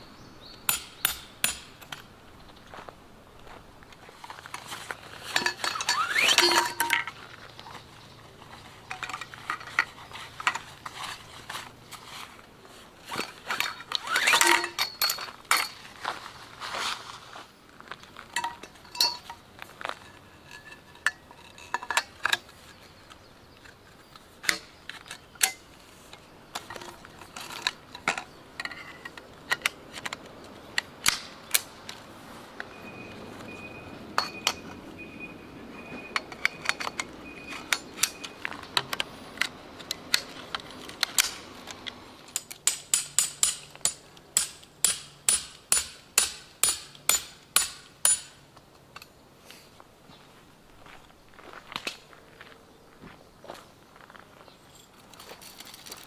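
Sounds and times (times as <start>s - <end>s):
metal camp gear clinking: 4.2s - 12.2s, 13.0s - 15.9s, 18.3s - 23.8s, 24.4s - 32.1s, 34.2s - 34.8s, 35.8s - 49.2s.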